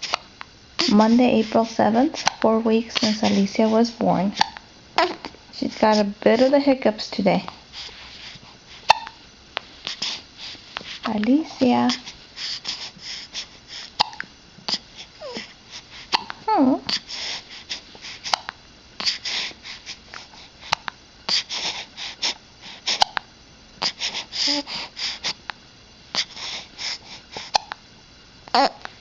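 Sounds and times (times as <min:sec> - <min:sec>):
baby hiccuping: 0:04.4 - 0:05.3, 0:08.9 - 0:09.2, 0:14.0 - 0:14.2, 0:16.1 - 0:16.4
breathy snuffles: 0:11.9 - 0:23.2, 0:26.1 - 0:27.8.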